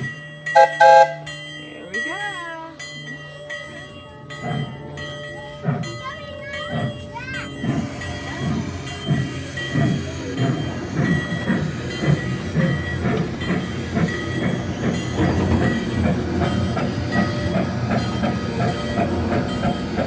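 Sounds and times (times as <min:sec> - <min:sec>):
train rumbling along track: 0:00.0 - 0:20.0
wheels clicking over rail joints: 0:04.3 - 0:20.0.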